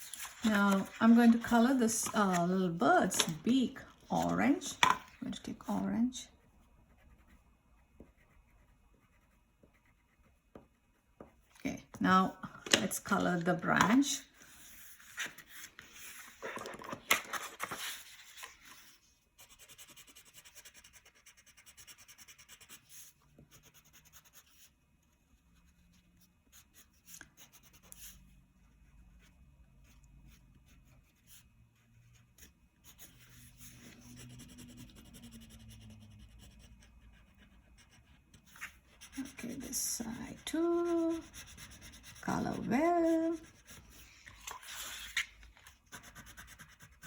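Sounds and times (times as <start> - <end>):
crayon scratching on paper: 6.9 - 10.7, 19.4 - 24.7, 32.8 - 45.2, 45.8 - 47.0.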